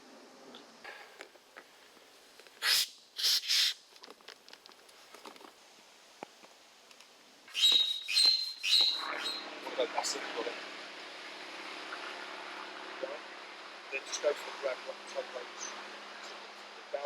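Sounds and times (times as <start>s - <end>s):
air hissing from valve: 2.6s - 3.8s.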